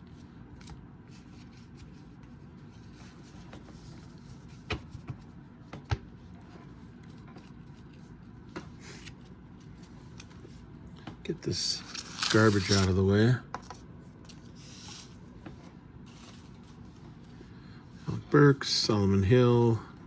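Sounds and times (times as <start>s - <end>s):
cards rubbing and sliding: 11.5s - 13.3s, 14.3s - 15.5s.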